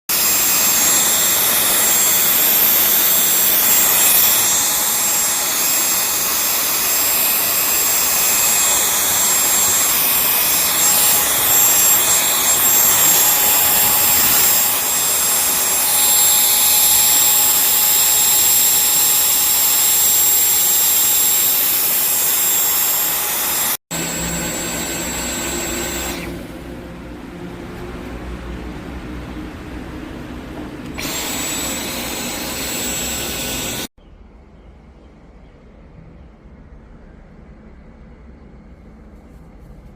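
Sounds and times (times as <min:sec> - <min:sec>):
cordless vacuum running: 0:00.0 - 0:26.6, 0:30.9 - 0:33.9.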